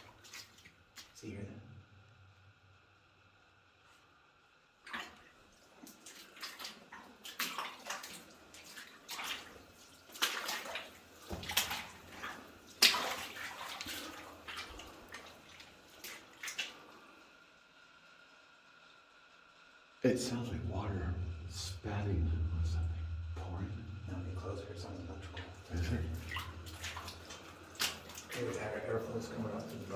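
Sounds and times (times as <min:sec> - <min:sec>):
footsteps splashing through water: 0:00.0 - 0:01.2, 0:04.9 - 0:17.1, 0:25.3 - 0:29.9.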